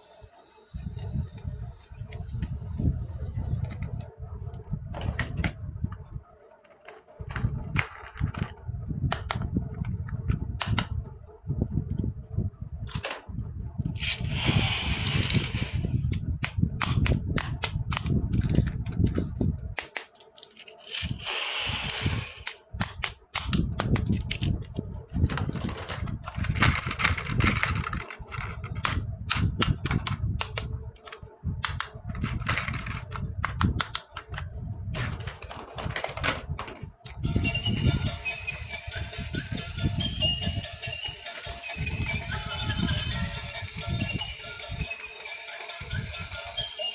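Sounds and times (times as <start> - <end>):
plastic toy pieces clicking: 19.8 - 24.6, 25.2 - 34.4.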